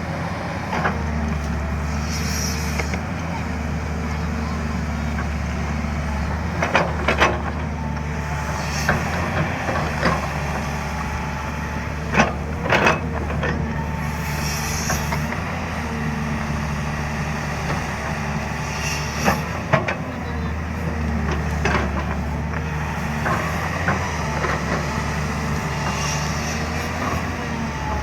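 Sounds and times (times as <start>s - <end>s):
excavator diesel engine running: 0.0s - 28.0s
brief hiss: 2.0s - 2.9s, 14.2s - 15.1s.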